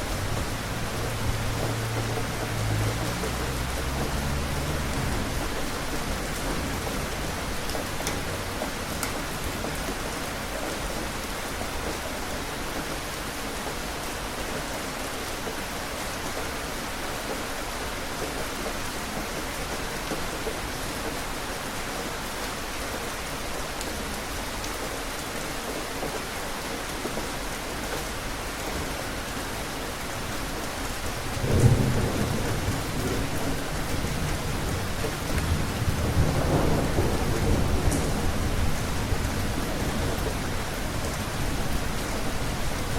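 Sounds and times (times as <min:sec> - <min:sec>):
steady rain falling: 0:00.0 - 0:42.9
low roll of thunder: 0:02.5 - 0:08.6, 0:31.3 - 0:42.9.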